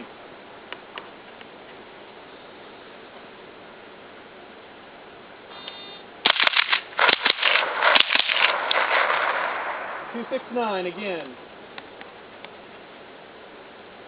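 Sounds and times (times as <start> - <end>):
shot timer beep: 5.6 - 6.0
rifle firing rapid shots: 6.2 - 10.3.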